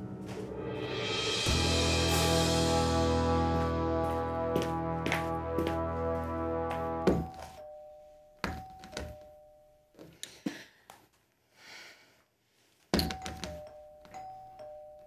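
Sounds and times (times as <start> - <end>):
knock on door: 7.0 - 7.4
electronic two-tone doorbell: 7.1 - 9.8.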